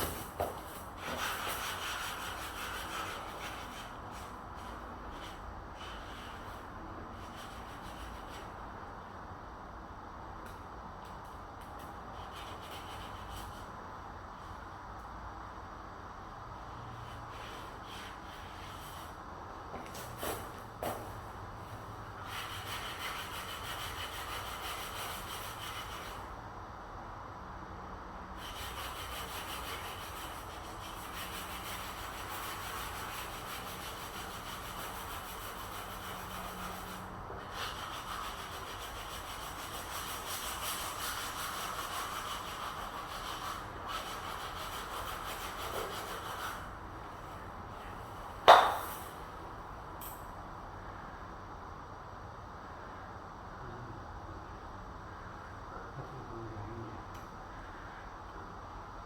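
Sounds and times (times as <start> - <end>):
sharp knock: 48.4 - 49.0.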